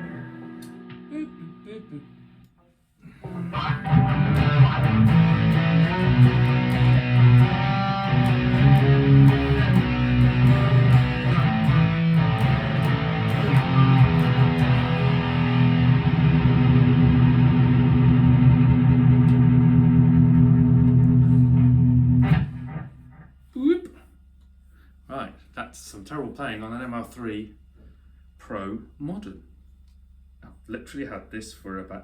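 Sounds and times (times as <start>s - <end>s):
electric guitar playing: 0.0s - 2.4s, 3.2s - 23.3s.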